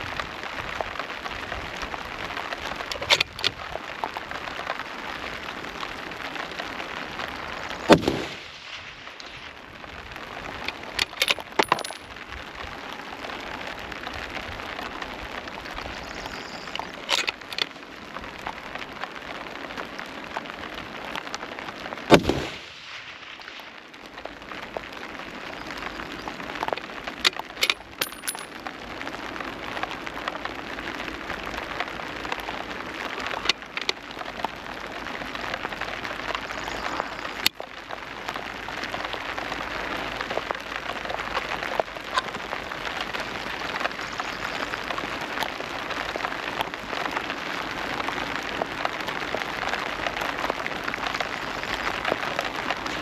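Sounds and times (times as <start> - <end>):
rain hissing: 0.0 - 53.0
rifle shots: 7.9 - 8.5, 22.1 - 22.7.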